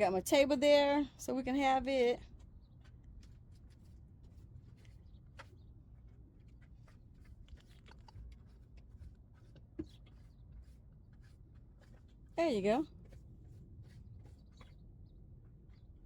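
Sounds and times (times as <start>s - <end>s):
faint clicks and rustles: 2.2s - 15.9s.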